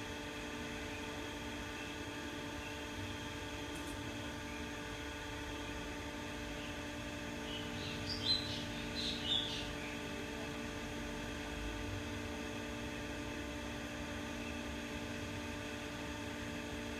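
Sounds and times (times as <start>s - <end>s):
ceiling fan motor humming: 0.0s - 16.9s.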